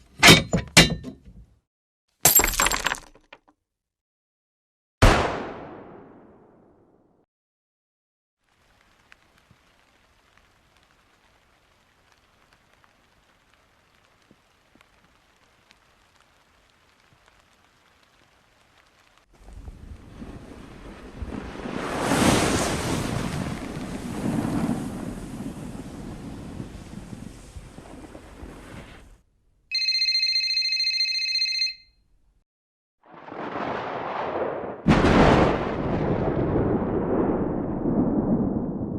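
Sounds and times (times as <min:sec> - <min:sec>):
rain drop ticks: 0:08.4 - 0:19.6
light rain hiss: 0:08.4 - 0:29.3
telephone ringing: 0:29.7 - 0:32.0.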